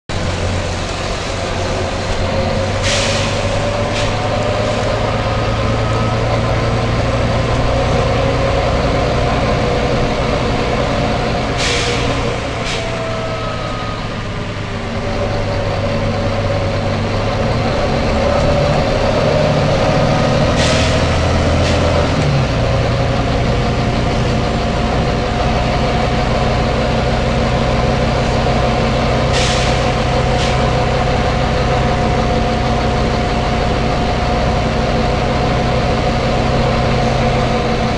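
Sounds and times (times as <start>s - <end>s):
bus diesel engine running: 0.1s - 37.9s
air brake hisses: 2.8s - 5.0s, 11.6s - 13.0s, 20.6s - 22.0s, 29.3s - 30.8s.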